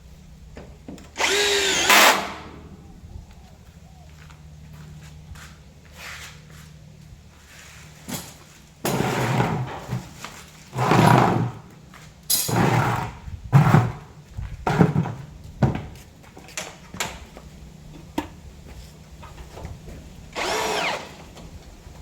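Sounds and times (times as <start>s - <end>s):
sliding door scraping on track: 8.8s - 11.7s, 12.4s - 15.2s.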